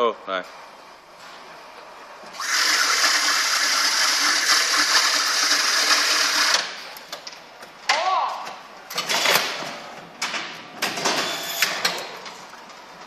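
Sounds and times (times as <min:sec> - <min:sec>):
small electric motor running: 0:02.4 - 0:06.6.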